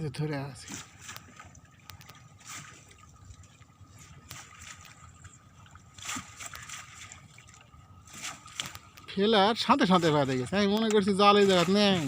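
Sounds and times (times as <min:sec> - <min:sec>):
water sloshing: 0:00.0 - 0:12.0
water splashes: 0:00.0 - 0:12.0.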